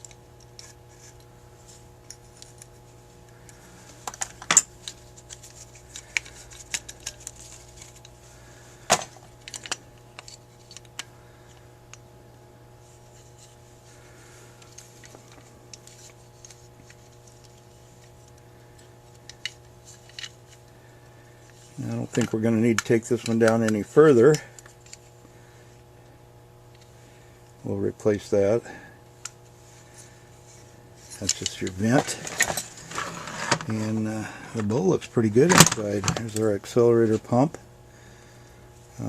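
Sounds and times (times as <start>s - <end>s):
metal parts clicking and clinking: 4.0s - 8.1s, 8.9s - 11.1s, 18.8s - 20.4s, 31.0s - 33.8s.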